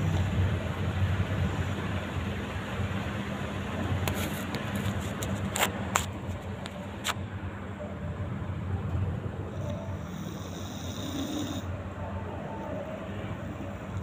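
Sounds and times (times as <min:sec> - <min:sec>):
dog snoring: 0:09.5 - 0:11.7.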